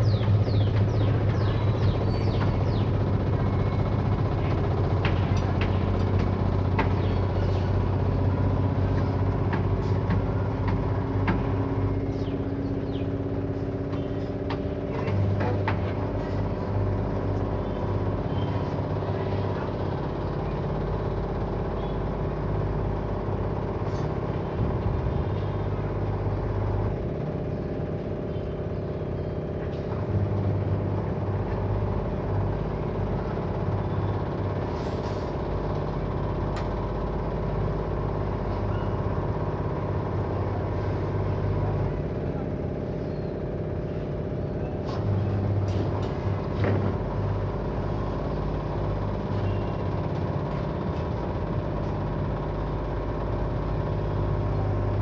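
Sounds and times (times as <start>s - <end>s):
washing machine spinning: 0.0s - 34.7s, 35.3s - 55.0s.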